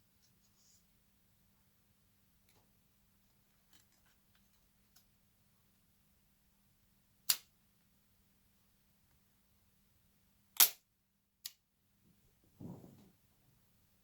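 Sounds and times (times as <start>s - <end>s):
soft rustle: 12.1s - 13.4s.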